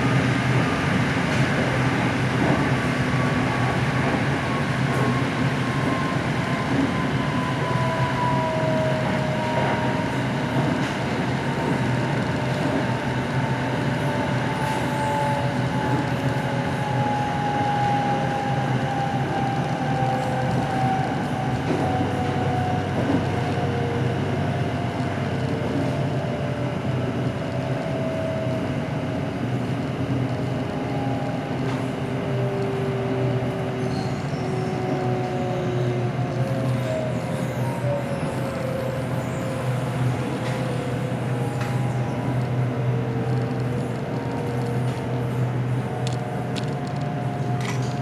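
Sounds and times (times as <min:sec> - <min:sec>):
electric train rumble: 0:00.0 - 0:48.0
train motor whine: 0:31.0 - 0:48.0.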